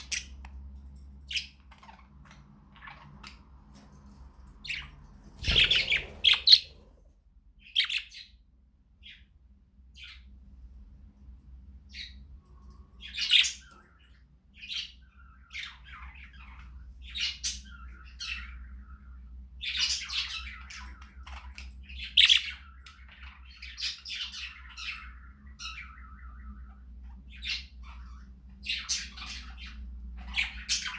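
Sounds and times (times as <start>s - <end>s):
low steady hum: 0.0s - 30.9s
budgerigars chattering and squawking: 4.7s - 7.0s, 7.6s - 8.3s, 13.0s - 18.7s, 19.6s - 26.3s, 27.0s - 30.9s.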